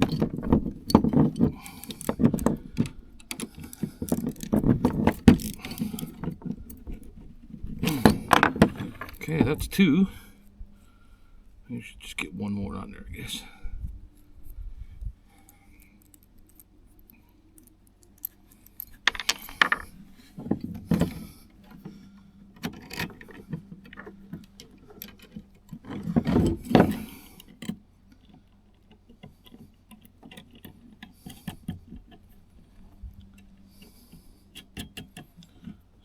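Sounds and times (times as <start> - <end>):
metal clinking and clicking: 0.0 - 9.3, 15.4 - 21.3
metal clanks of handling: 0.0 - 9.6, 17.6 - 22.0, 22.6 - 35.9.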